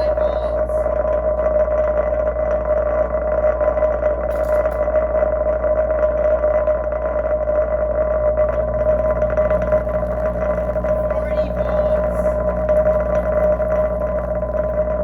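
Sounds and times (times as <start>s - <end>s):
subwoofer loud steady drone: 0.0s - 15.0s
higher-pitched tone: 10.6s - 12.6s.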